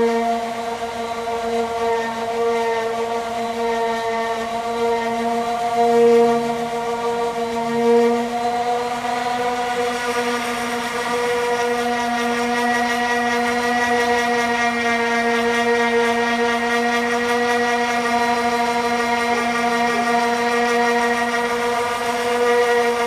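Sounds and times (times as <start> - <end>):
power sander whining: 0.0 - 23.0.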